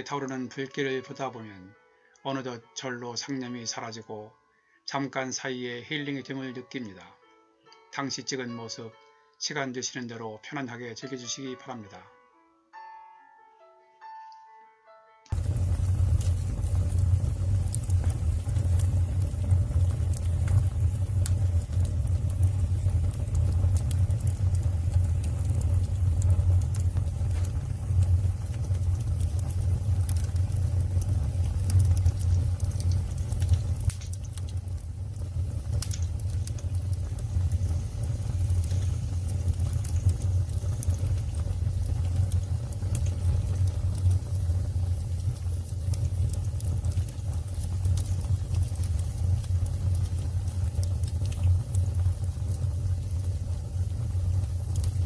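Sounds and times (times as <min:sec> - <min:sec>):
burning wood crackling and popping: 0:15.3 - 0:55.0
low rumble of flames: 0:15.3 - 0:55.0.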